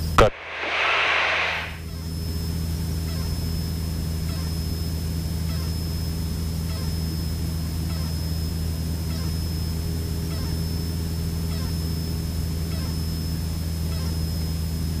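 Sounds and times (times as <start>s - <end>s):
thin high whine: 0.0s - 1.9s
propeller engine droning: 0.1s - 1.9s.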